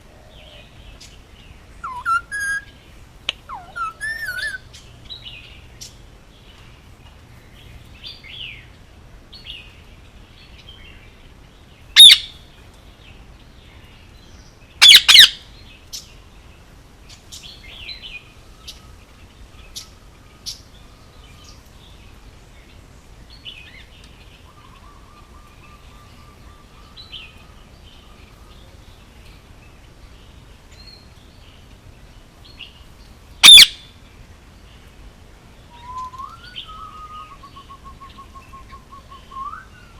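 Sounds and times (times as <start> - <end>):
parakeet shrill screeches: 12.0 - 12.2, 33.4 - 33.7.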